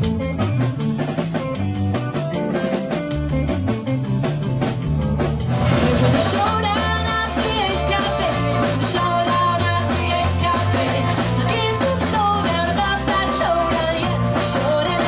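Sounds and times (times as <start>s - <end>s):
rock and roll band playing: 0.0s - 15.0s
person singing: 5.6s - 15.0s.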